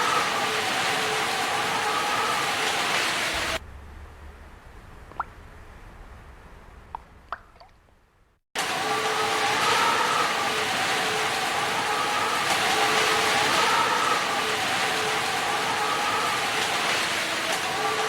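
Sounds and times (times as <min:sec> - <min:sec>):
steady heavy rain: 0:00.0 - 0:04.9, 0:08.6 - 0:18.0
water drips: 0:05.0 - 0:05.5, 0:06.9 - 0:08.0.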